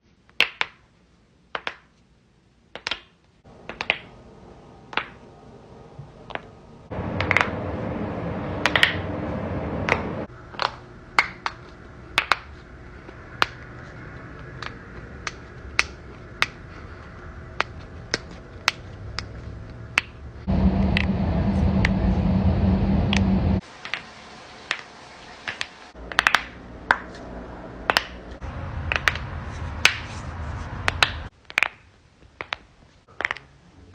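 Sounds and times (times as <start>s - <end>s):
low steady hum: 3.5s - 11.2s, 16.3s - 31.3s
knuckles cracking: 14.6s - 20.1s.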